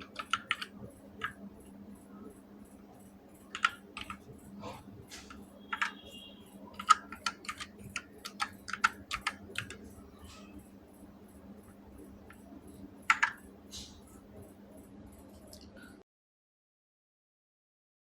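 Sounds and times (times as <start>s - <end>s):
mechanical keyboard clacks: 0.0s - 1.4s, 3.5s - 4.3s, 5.2s - 6.1s, 6.7s - 10.0s, 13.0s - 13.5s.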